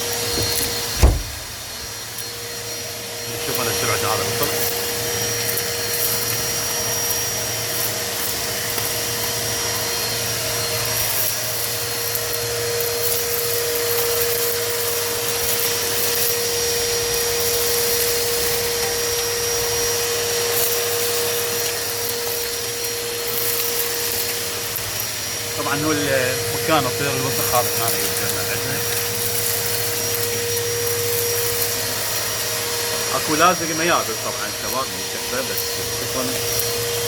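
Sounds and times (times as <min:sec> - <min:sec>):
vacuum cleaner motor whine: 0:00.0 - 0:37.0
debris ticking up nozzle: 0:12.8 - 0:32.2.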